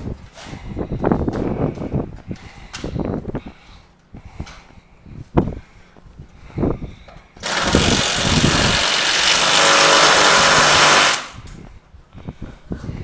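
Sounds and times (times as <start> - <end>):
power tool running: 7.4 - 11.4.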